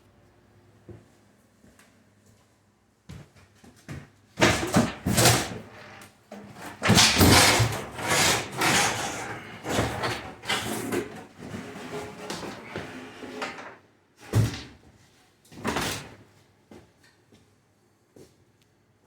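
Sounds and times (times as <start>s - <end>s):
wood scraping and knocking: 6.5s - 13.7s.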